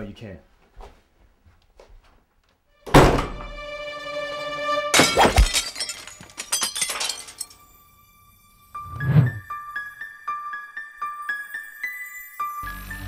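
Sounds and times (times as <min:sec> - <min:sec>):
crashing and breaking impacts: 0:05.0 - 0:07.6
loud crash of breaking: 0:05.0 - 0:07.6.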